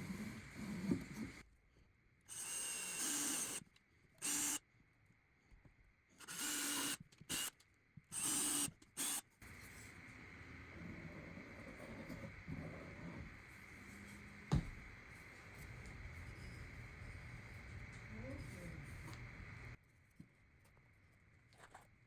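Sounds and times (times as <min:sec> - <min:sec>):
cordless drill running: 0:02.3 - 0:03.6, 0:04.2 - 0:04.6, 0:06.2 - 0:07.5, 0:08.1 - 0:09.2.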